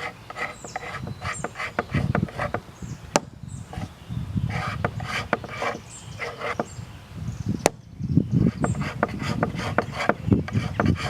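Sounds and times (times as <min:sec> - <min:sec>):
scraper rasping on wood: 0:00.0 - 0:02.7, 0:03.7 - 0:06.8, 0:08.4 - 0:11.0.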